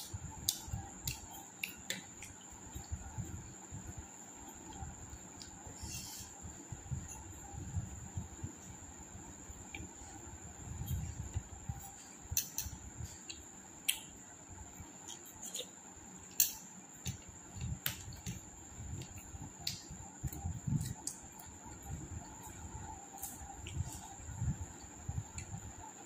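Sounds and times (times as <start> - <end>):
steady high-pitched whine: 0.0 - 26.0
small sharp clicks: 12.3 - 14.1, 16.3 - 18.4.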